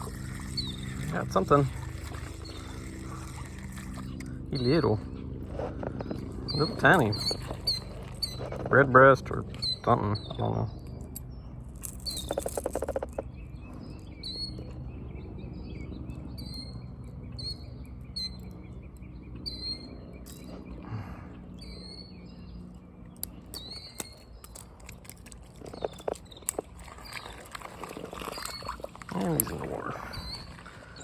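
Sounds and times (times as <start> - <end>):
small bird chirping: 6.0 - 8.7, 21.4 - 24.8, 25.5 - 31.0.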